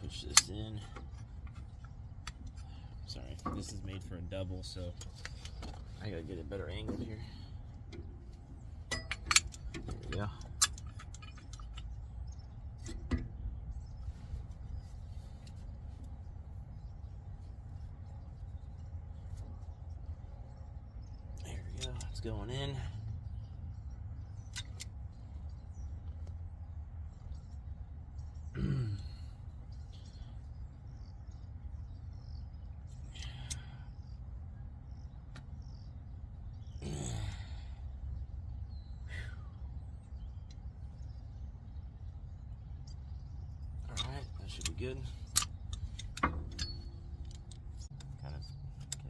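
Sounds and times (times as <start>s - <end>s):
low background rumble: 0.0s - 49.0s
metallic clicks of a tool: 43.8s - 48.1s.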